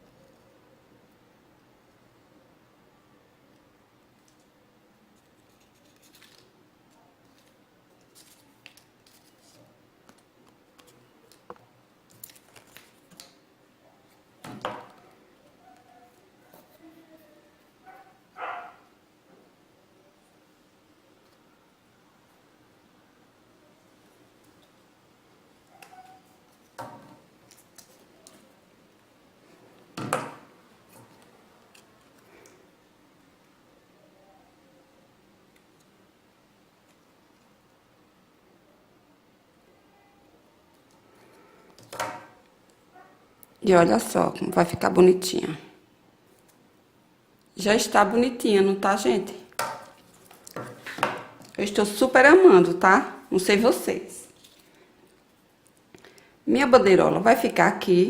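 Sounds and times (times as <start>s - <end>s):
clicks and rustles of materials: 5.2s - 13.4s.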